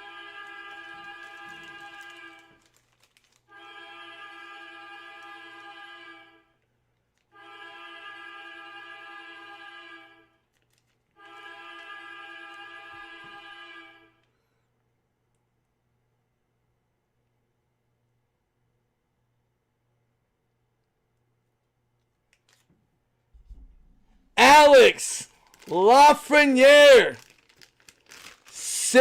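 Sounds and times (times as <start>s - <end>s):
hockey goal horn blasts: 3.5s - 6.4s, 7.4s - 10.2s, 11.2s - 14.1s.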